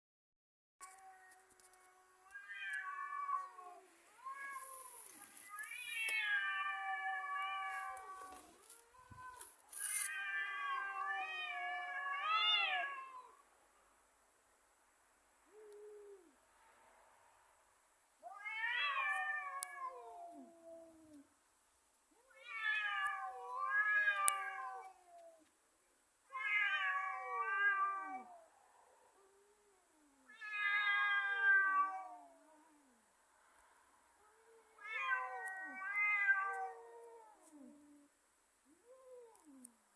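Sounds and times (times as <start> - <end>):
cats yowling: 2.2 - 13.3, 18.2 - 21.2, 22.2 - 25.4, 26.3 - 28.5, 30.2 - 32.9, 34.3 - 38.1
cat yowling: 26.4 - 28.5, 30.2 - 32.7, 34.6 - 37.7.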